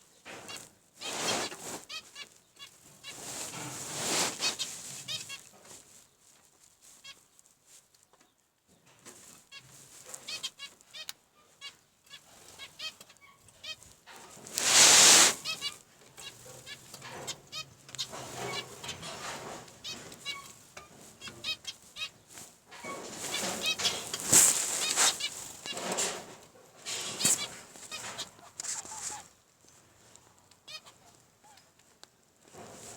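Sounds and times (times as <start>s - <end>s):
loud rustling: 3.2s - 4.9s, 14.4s - 15.6s, 22.8s - 29.2s.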